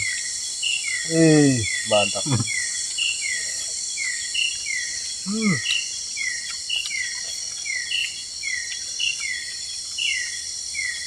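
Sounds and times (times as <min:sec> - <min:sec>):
repeated chirping call: 0:00.0 - 0:04.6
insects droning: 0:00.0 - 0:11.0
brief low vocal sound: 0:05.3 - 0:05.6.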